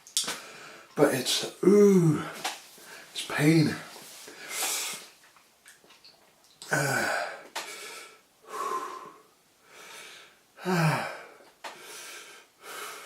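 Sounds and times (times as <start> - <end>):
man groaning: 1.6 - 2.4, 6.7 - 7.4, 10.6 - 11.3
man gasping and breathing hard: 6.7 - 13.0.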